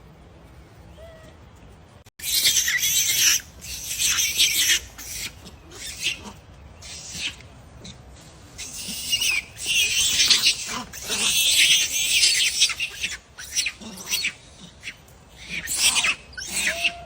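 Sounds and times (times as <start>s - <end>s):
monkey screaming: 2.2s - 8.0s, 8.6s - 17.0s.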